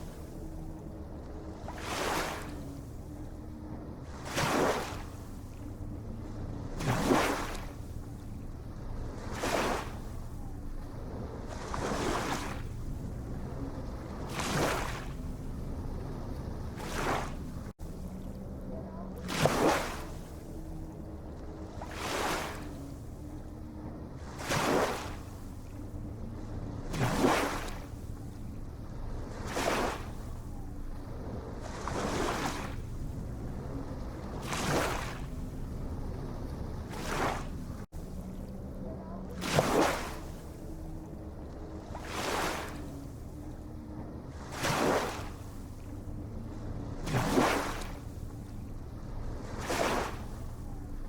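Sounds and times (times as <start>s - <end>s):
low rumble of surf: 0.0s - 51.0s
small ocean waves washing in: 0.0s - 51.0s
steady low rumble: 10.1s - 19.2s, 25.2s - 39.4s.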